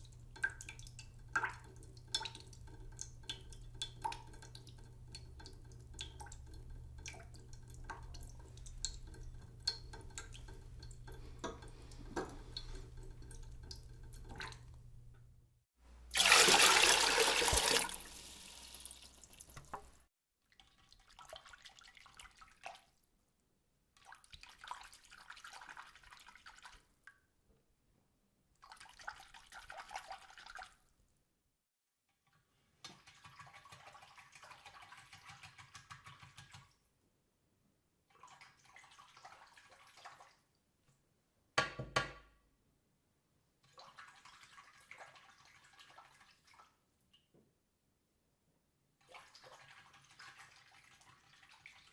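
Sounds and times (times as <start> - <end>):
water dripping: 0.0 - 15.4, 16.1 - 23.1.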